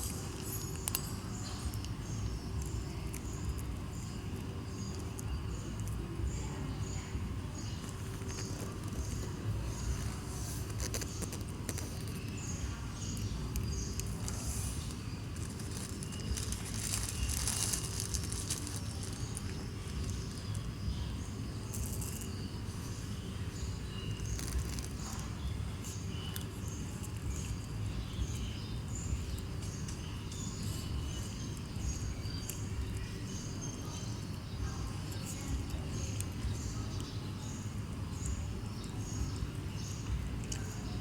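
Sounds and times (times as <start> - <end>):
chewing clicks and crunches: 0.0 - 6.0, 7.8 - 20.7, 21.7 - 22.4, 23.8 - 41.0
low steady background hum: 0.0 - 41.0.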